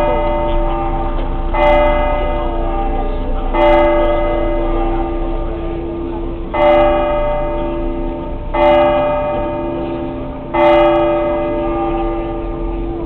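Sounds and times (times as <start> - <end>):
church bell tolling: 0.0 - 13.0.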